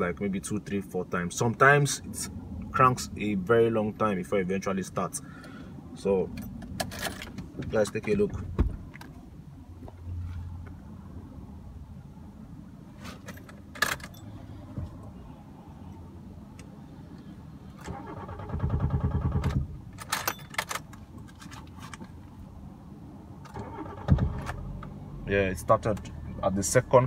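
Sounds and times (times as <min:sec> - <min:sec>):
keys jangling in ignition: 0:06.3 - 0:07.4, 0:13.2 - 0:14.4, 0:19.9 - 0:22.1
car engine firing: 0:17.8 - 0:20.8, 0:23.4 - 0:24.9
car engine starter cranking: 0:17.8 - 0:21.0, 0:23.4 - 0:24.9.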